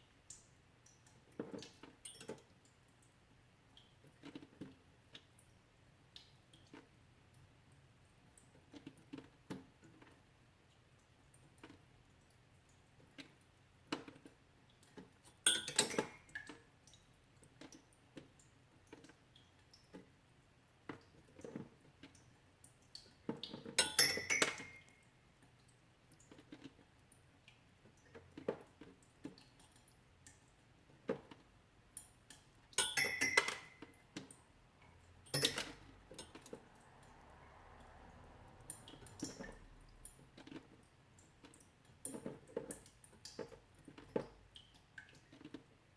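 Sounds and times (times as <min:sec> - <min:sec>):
melting ice dripping and ticking: 0:00.1 - 0:30.9
ice clinking: 0:15.5 - 0:16.3, 0:23.8 - 0:24.9, 0:32.8 - 0:33.8.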